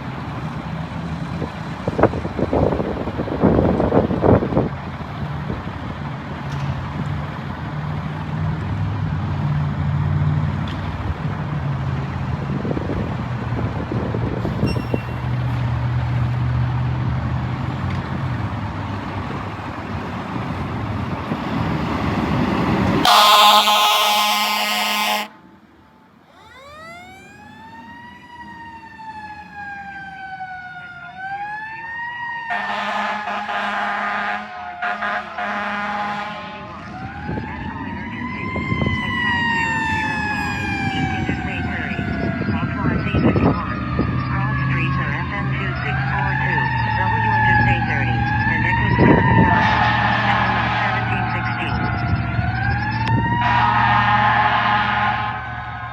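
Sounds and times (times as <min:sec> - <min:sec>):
heavy diesel engine: 0:00.0 - 0:26.3, 0:40.2 - 0:55.9
road noise: 0:00.0 - 0:55.9
fire engine air horns: 0:23.0 - 0:25.5, 0:26.3 - 0:27.8, 0:32.4 - 0:37.4, 0:47.5 - 0:52.0, 0:53.1 - 0:55.9
mechanical siren winding: 0:26.3 - 0:27.8.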